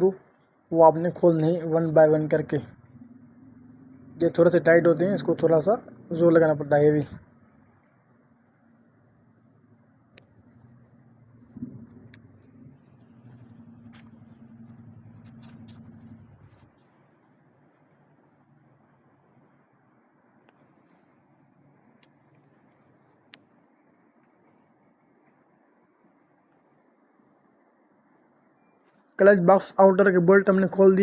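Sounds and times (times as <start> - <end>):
crickets chirring: 0.0 - 31.0
low hum: 0.7 - 16.8
faint clicks: 10.1 - 16.7, 21.9 - 23.5.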